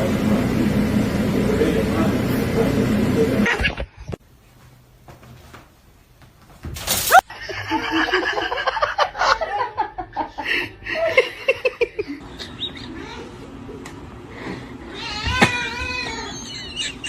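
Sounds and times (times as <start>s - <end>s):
stuttering laughter: 15.4s - 17.0s.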